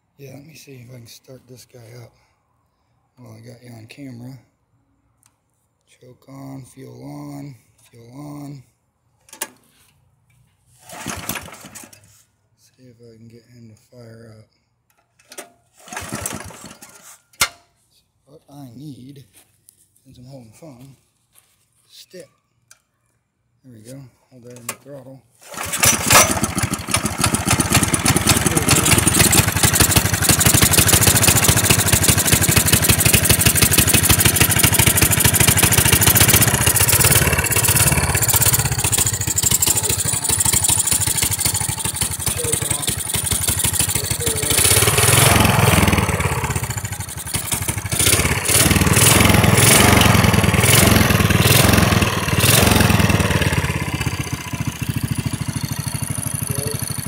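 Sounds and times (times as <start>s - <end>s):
go-kart engine revving: 10.8s - 11.9s, 15.9s - 16.8s, 25.4s - 57.0s.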